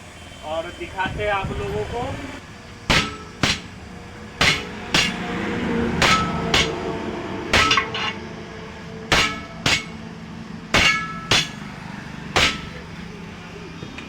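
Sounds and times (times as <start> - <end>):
hammer striking steel rim: 2.9 - 3.8, 4.4 - 8.3, 9.1 - 10.0, 10.7 - 12.8.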